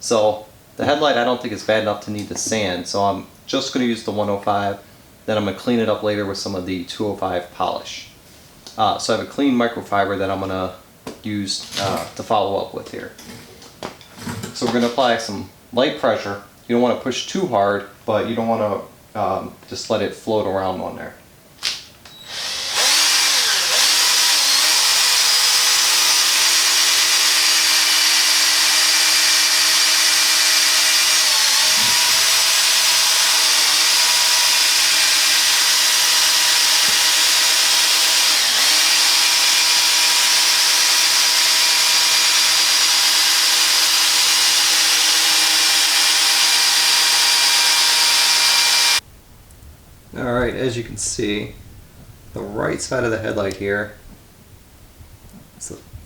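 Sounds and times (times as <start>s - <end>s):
electric polisher spinning: 22.3s - 49.0s.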